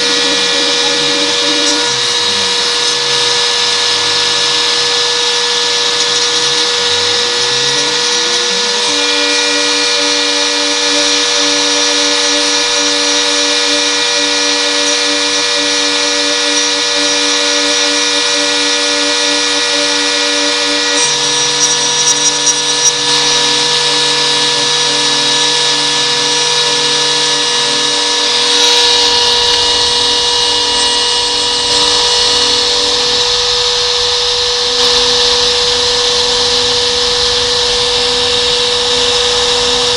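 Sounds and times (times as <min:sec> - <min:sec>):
cutter crackles: 0:00.0 - 0:39.9
spindle motor whine: 0:00.0 - 0:39.9
stepper motors humming: 0:00.0 - 0:39.9.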